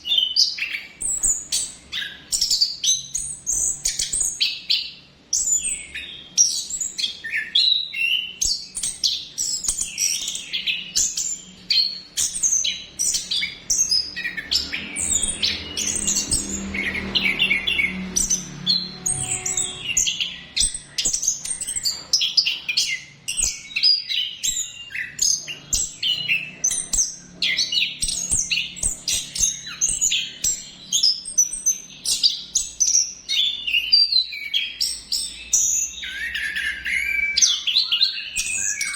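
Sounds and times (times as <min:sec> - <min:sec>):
thrush singing rapid chirps: 0:08.1 - 0:21.8.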